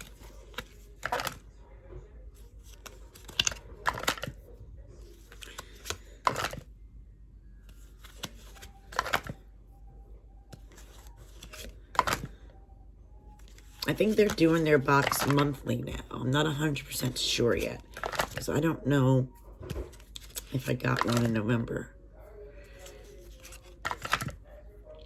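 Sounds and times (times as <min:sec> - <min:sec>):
cards shuffling: 0:00.0 - 0:01.5, 0:02.4 - 0:04.4, 0:05.0 - 0:06.7, 0:07.7 - 0:09.4, 0:10.5 - 0:12.4, 0:13.4 - 0:16.0, 0:17.0 - 0:18.6, 0:19.6 - 0:21.5, 0:22.6 - 0:24.4.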